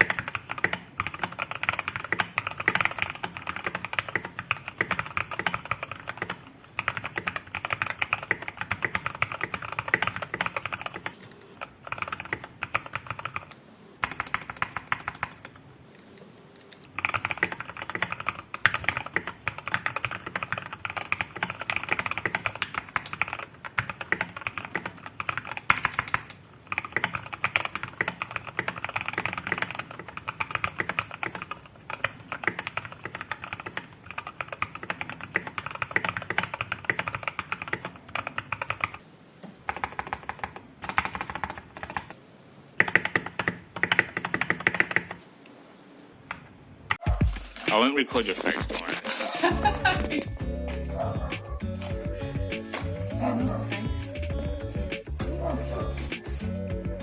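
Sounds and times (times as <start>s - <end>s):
fast mechanical keyboard typing: 0.0s - 15.6s, 16.7s - 39.0s, 39.7s - 42.2s, 42.8s - 45.2s.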